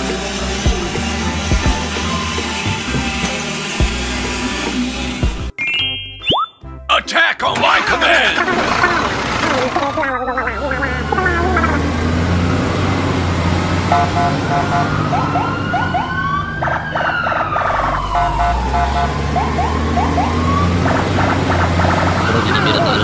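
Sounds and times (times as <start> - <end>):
low engine-like drone: 0.0 - 5.2, 7.9 - 23.0
rising chirps and beeps: 5.5 - 6.6, 10.1 - 11.9
siren-like wail: 10.0 - 12.9, 13.9 - 20.9.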